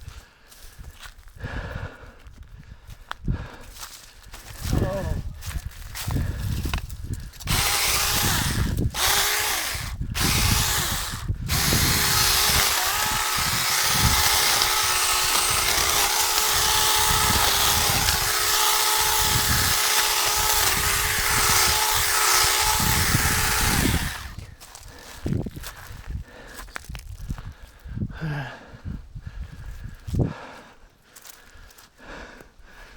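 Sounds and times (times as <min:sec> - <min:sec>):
electric chainsaw cutting branches: 0:06.7 - 0:25.0.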